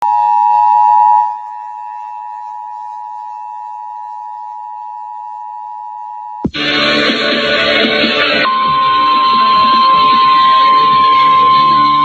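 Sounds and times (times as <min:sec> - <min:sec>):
two-tone electronic alert wail: 0:00.0 - 0:06.5, 0:08.1 - 0:12.0
loud music: 0:06.4 - 0:12.0.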